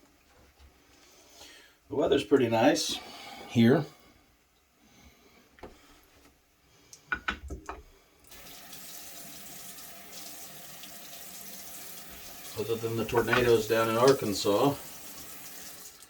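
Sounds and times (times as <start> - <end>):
water tap running: 8.3 - 16.0.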